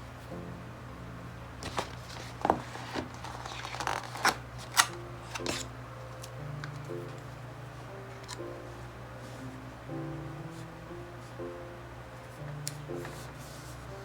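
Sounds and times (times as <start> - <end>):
crisp paper clicks and rustles: 1.6 - 6.9.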